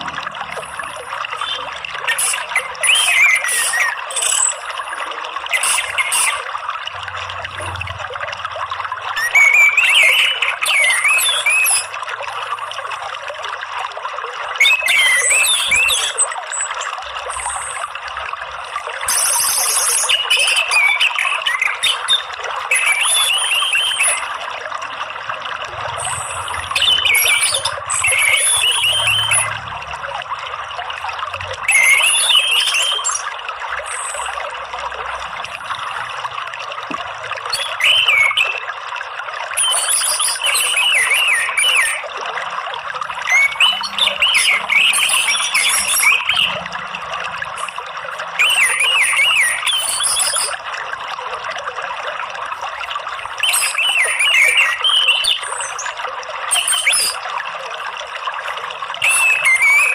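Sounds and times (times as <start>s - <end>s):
trickle of running water: 0.0s - 59.9s
thrush singing whistled phrases: 0.5s - 6.6s, 9.1s - 12.0s, 14.5s - 18.1s, 18.7s - 24.4s, 25.7s - 29.7s, 31.5s - 34.6s, 37.4s - 38.6s, 39.6s - 42.1s, 43.1s - 50.6s, 53.4s - 57.2s, 59.0s - 59.9s.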